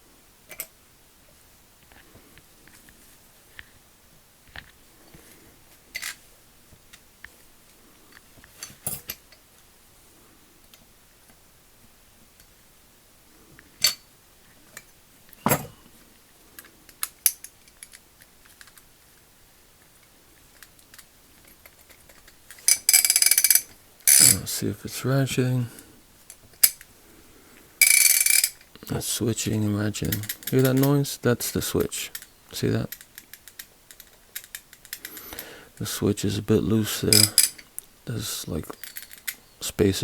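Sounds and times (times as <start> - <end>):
ratchet parts clicking and clinking: 20.6 - 24.4, 27.8 - 28.7, 30.0 - 31.0, 32.9 - 35.2, 37.1 - 37.7, 38.7 - 39.4.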